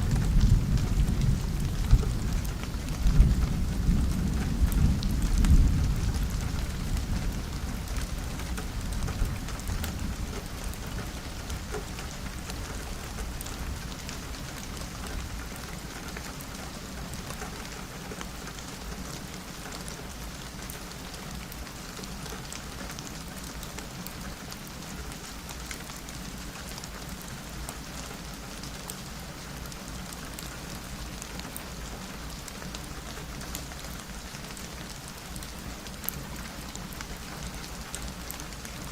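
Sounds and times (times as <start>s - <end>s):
thunder rumble: 0.0s - 8.1s
steady rain: 0.0s - 38.9s.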